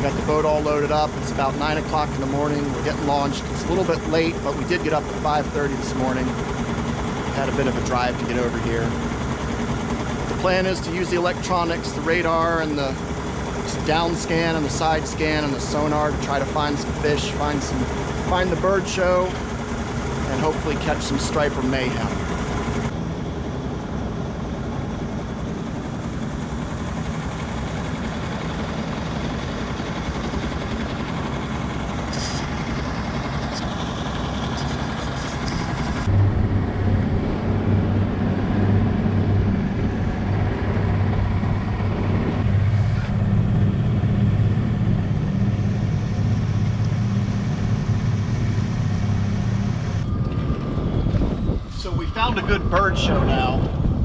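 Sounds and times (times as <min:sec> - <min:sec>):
boat engine running: 0:00.0 - 0:54.0
wind: 0:00.0 - 0:54.0
water noise: 0:27.4 - 0:54.0.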